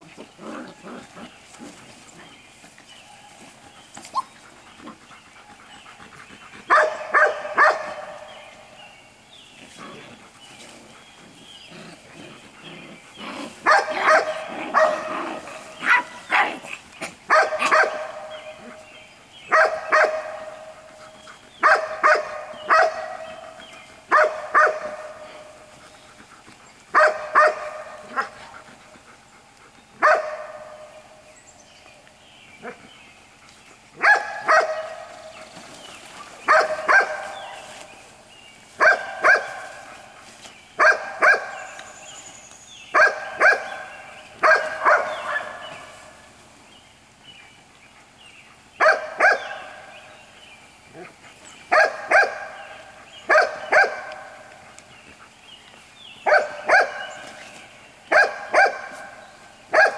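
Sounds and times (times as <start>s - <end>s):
puppies barking: 6.7s - 8.4s, 11.7s - 18.9s, 19.5s - 25.7s, 26.9s - 28.7s, 30.0s - 31.1s, 34.0s - 35.5s, 36.4s - 37.9s, 38.8s - 42.2s, 42.9s - 46.3s, 48.8s - 50.1s, 51.0s - 54.9s, 56.2s - 57.4s, 58.1s - 59.9s.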